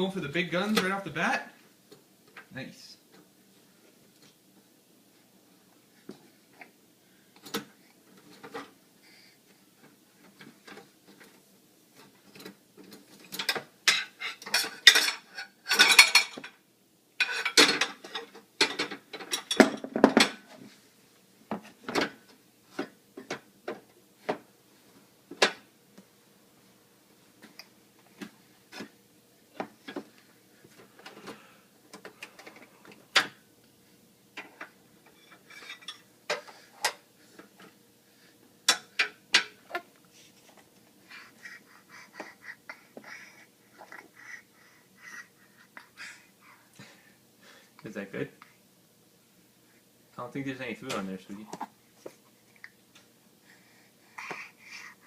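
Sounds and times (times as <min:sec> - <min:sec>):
cutlery clinking and clattering: 0:13.1 - 0:16.6, 0:17.2 - 0:20.4, 0:35.1 - 0:37.0.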